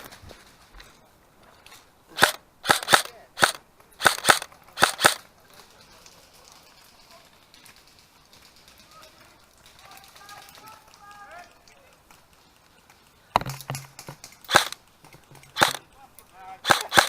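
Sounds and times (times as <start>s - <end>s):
airsoft gun shots: 2.2s - 5.2s, 14.5s - 14.8s, 15.6s - 15.8s, 16.6s - 17.0s.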